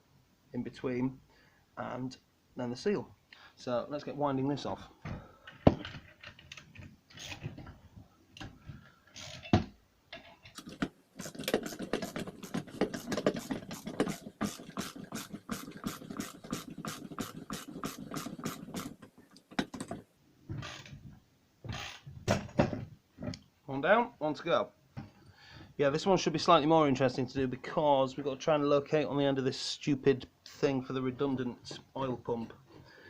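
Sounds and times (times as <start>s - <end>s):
rapid metallic clicking of hand tool: 10.5s - 20.0s.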